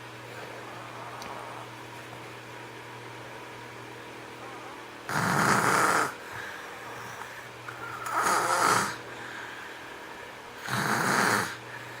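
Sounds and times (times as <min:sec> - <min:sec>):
faint steady hum: 0:00.0 - 0:12.0
snoring: 0:05.1 - 0:06.2, 0:07.8 - 0:09.0, 0:10.6 - 0:11.6.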